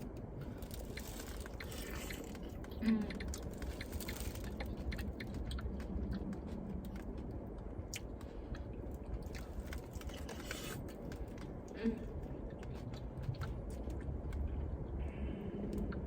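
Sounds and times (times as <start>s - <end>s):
wet chewing and mouth smacks: 0.4s - 15.0s.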